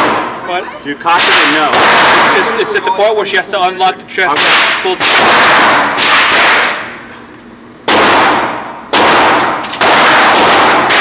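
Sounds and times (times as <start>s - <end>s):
gunshots cracking: 1.1s - 2.6s, 4.3s - 6.9s, 7.8s - 11.0s.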